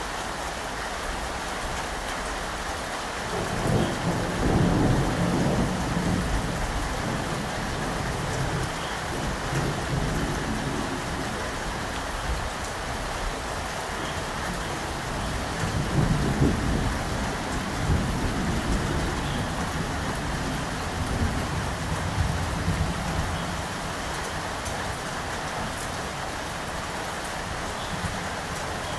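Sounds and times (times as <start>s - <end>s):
heavy rain falling: 0.0s - 28.9s
low thunder rumble: 3.3s - 11.4s, 15.0s - 23.8s.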